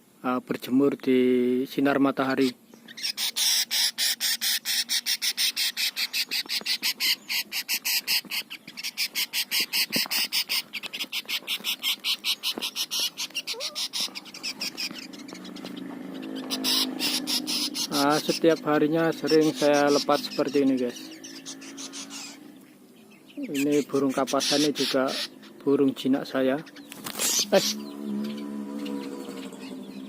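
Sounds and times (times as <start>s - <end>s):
pulsing high-pitched animal call: 2.9s - 18.6s, 19.2s - 22.6s.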